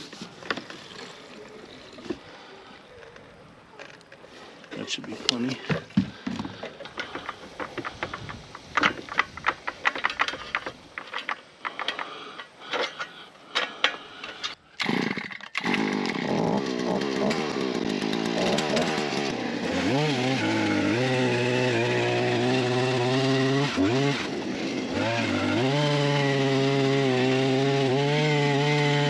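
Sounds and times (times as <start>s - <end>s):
small gas engine starting and running: 8.8s - 29.0s.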